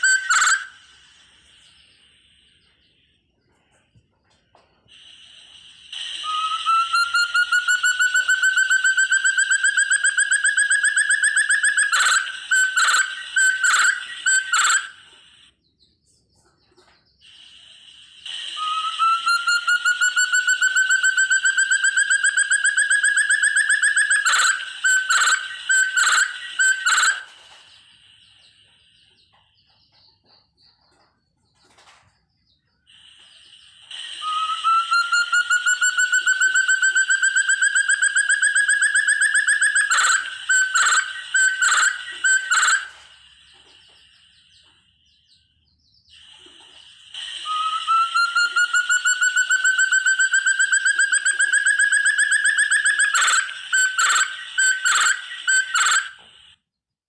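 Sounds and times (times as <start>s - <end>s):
steady high tone: 0.0s - 2.3s, 17.7s - 27.4s, 33.1s - 43.6s
bird trilling: 0.0s - 2.8s, 5.0s - 15.5s, 17.2s - 29.1s, 32.9s - 45.5s, 46.1s - 56.6s.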